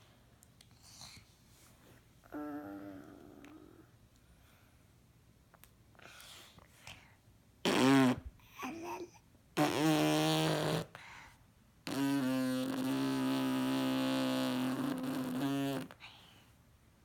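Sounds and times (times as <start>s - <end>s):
girl making wordless vocal sounds: 2.2s - 3.9s.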